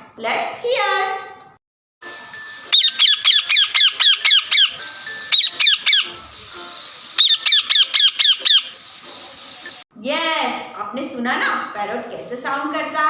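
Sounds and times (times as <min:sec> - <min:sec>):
parrot calling: 0:02.1 - 0:09.8.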